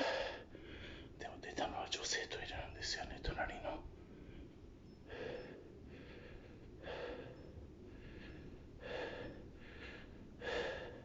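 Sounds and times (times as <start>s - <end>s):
person breathing heavily: 0.0s - 1.2s, 4.1s - 11.0s.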